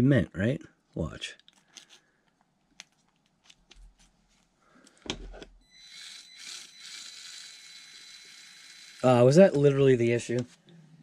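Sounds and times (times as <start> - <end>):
small electric motor whirring: 5.7 - 9.7.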